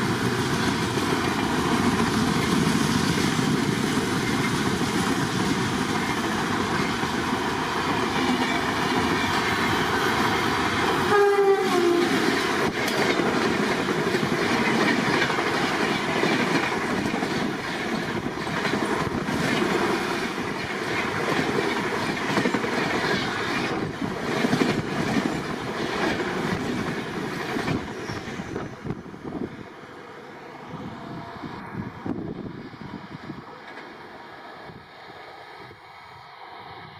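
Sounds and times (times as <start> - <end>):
train wheels clattering: 0.0 - 28.9
train horn blast: 11.0 - 12.2.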